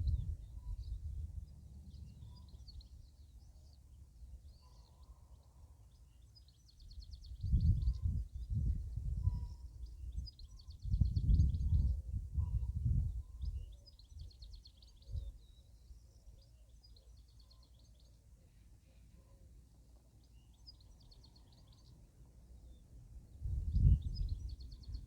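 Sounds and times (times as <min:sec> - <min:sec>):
wind gusting against microphone: 0:07.3 - 0:13.7, 0:23.3 - 0:25.0.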